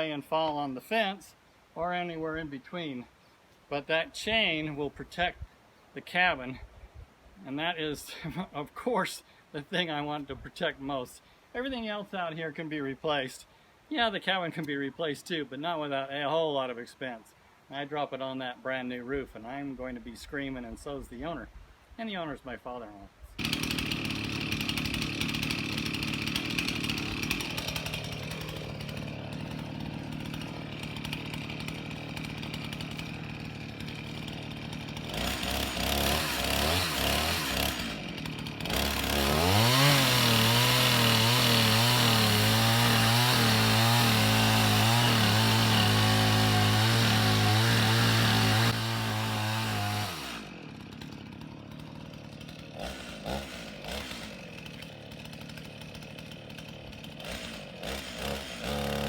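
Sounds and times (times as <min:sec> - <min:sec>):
chainsaw idling and revving: 0:23.4 - 0:59.0
chainsaw sawing into wood: 0:23.4 - 0:59.0.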